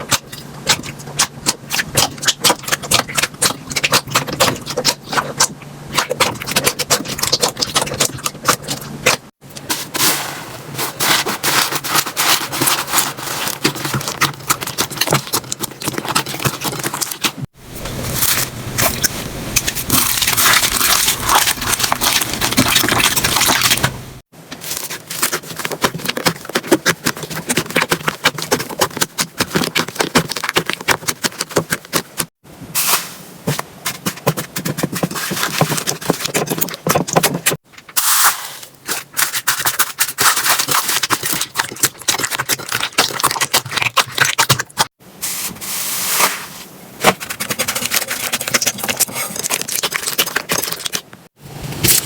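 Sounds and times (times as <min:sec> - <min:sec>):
slime crackling and popping: 0:18.0 - 0:24.0.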